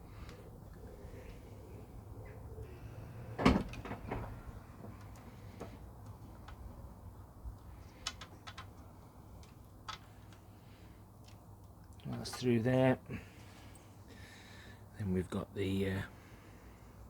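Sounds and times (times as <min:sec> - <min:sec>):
small clicks: 0:07.5 - 0:10.4.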